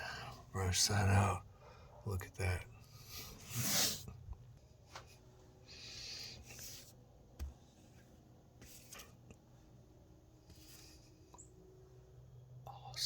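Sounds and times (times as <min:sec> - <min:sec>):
paintbrush swishing over wood: 0:06.4 - 0:07.0, 0:07.8 - 0:09.2.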